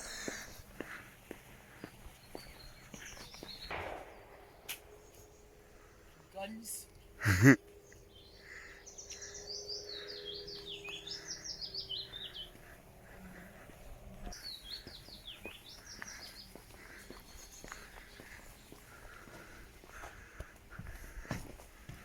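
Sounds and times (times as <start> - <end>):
songbird singing: 0.0 - 19.6.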